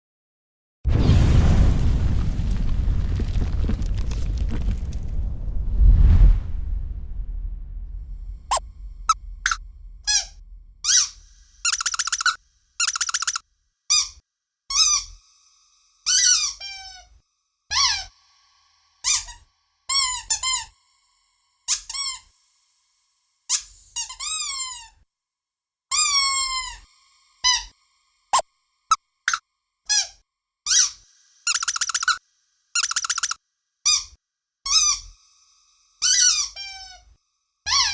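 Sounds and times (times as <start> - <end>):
squeaky dog toy squeaking: 9.4 - 15.2, 16.1 - 17.1, 17.7 - 18.1, 19.1 - 20.7, 21.7 - 22.2, 23.5 - 24.9, 25.9 - 26.8, 29.3 - 32.2, 32.8 - 35.1, 36.0 - 37.1, 37.7 - 37.9.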